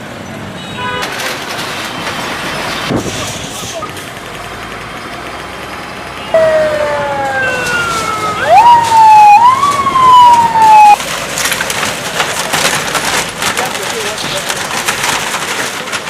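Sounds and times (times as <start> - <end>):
outdoor background noise: 0.0 - 16.0
siren: 6.2 - 11.0.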